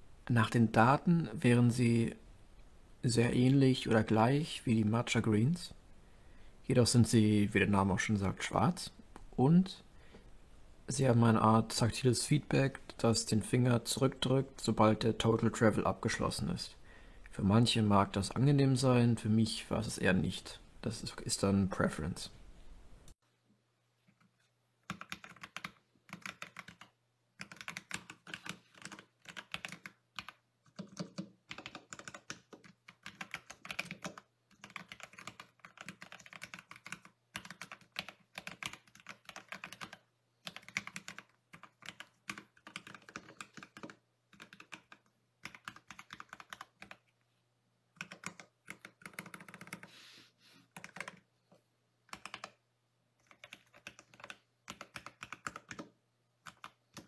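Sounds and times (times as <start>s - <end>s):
typing on mechanical keyboard: 24.8s - 47.0s, 48.0s - 49.9s, 50.7s - 51.3s, 52.1s - 52.6s, 53.2s - 57.0s.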